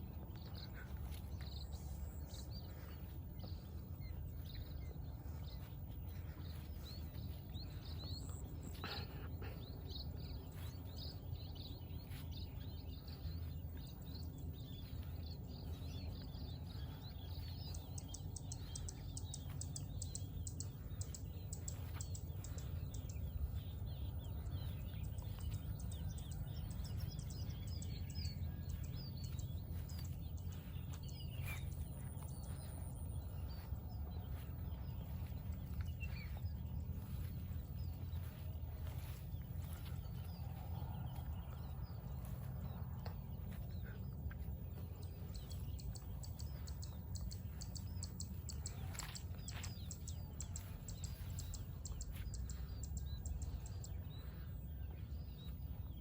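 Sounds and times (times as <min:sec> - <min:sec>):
low outdoor rumble: 0:00.0 - 0:56.0
small birds chirping: 0:00.0 - 0:56.0.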